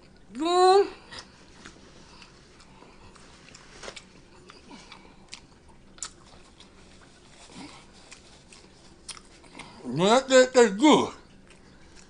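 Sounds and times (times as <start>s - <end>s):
person chewing: 1.0s - 9.8s, 11.2s - 12.0s.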